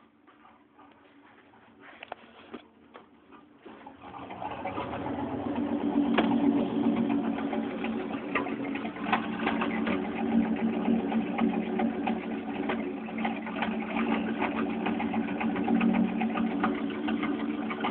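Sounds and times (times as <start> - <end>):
car engine idling rough: 3.9 - 17.9
fast irregular engine ticking: 3.9 - 17.9.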